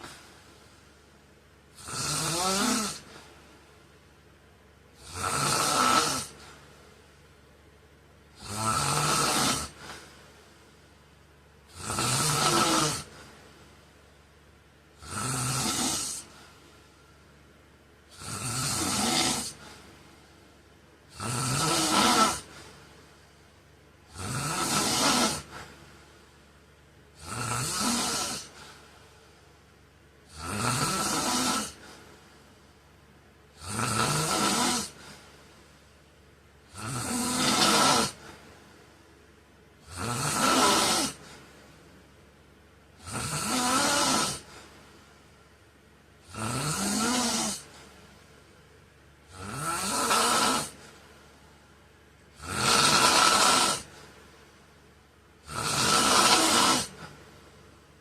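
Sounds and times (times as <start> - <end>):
man snoring: 1.7 - 3.4, 4.9 - 6.6, 8.3 - 10.2, 11.6 - 13.4, 14.9 - 16.6, 18.1 - 20.2, 21.1 - 23.2, 24.0 - 25.8, 27.2 - 28.9, 30.2 - 32.1, 33.5 - 35.3, 36.6 - 38.5, 39.8 - 41.5, 43.0 - 44.8, 46.2 - 47.9, 49.3 - 51.0, 52.3 - 54.1, 55.4 - 57.2.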